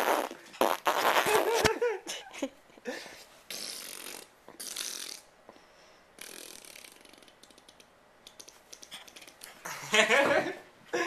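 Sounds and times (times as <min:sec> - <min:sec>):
mouth fart noises: 0:00.0 - 0:01.8, 0:03.5 - 0:05.3, 0:06.2 - 0:08.8.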